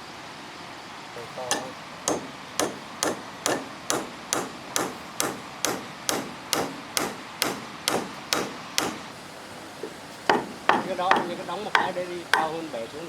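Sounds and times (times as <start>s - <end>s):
hammer blows: 1.3s - 9.1s, 10.3s - 12.5s.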